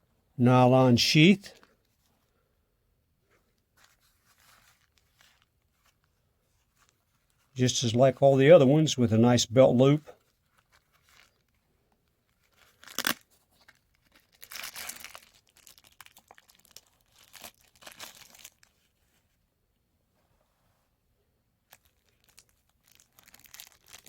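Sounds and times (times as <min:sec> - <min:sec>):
packaging crinkling and rustling: 0:03.5 - 0:07.6, 0:10.2 - 0:19.3, 0:21.7 - 0:24.0
packaging ripping: 0:12.3 - 0:18.8, 0:21.7 - 0:24.0.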